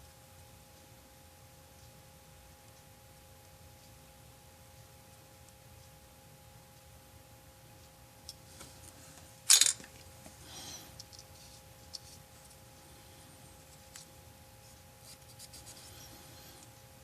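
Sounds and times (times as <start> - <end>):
faint brushing scrape: 11.3 - 12.6, 13.3 - 16.7.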